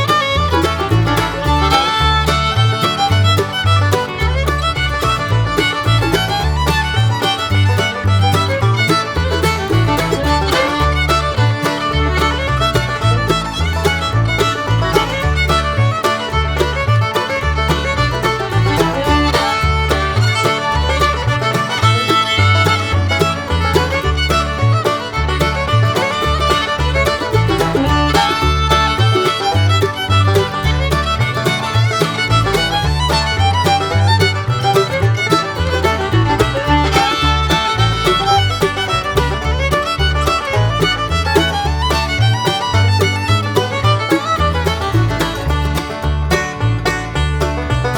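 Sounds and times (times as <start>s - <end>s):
fiddle-led bluegrass tune: 0.0s - 47.9s
steady bass beat: 0.0s - 47.9s.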